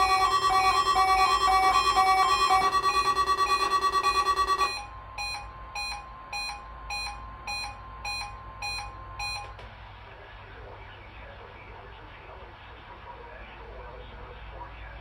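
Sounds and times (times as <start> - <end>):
faint steady tone: 0.0 - 9.5
pulsing electronic alarm: 0.0 - 9.5
short beeps: 0.0 - 9.6.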